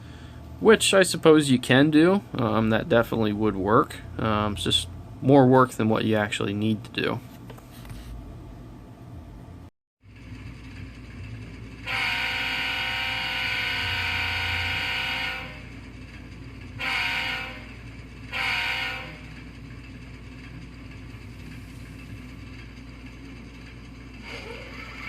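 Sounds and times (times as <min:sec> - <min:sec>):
simulated diesel engine sound: 0:00.0 - 0:06.5, 0:10.0 - 0:25.0
simulated locomotive air horn: 0:11.8 - 0:15.9, 0:16.7 - 0:19.5.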